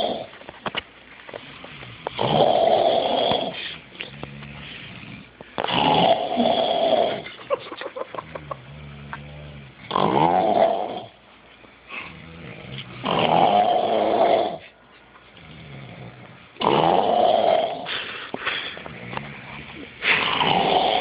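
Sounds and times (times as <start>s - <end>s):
heavy snoring: 0.0s - 0.3s, 1.4s - 7.4s, 8.4s - 11.2s, 12.0s - 14.7s, 15.4s - 18.2s, 18.8s - 21.0s.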